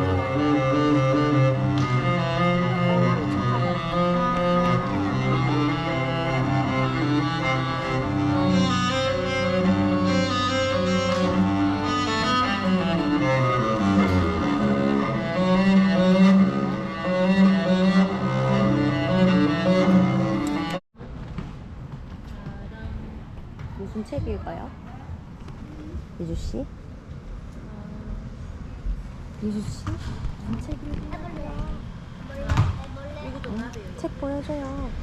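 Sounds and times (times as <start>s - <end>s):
low bowed strings: 0.0s - 20.8s.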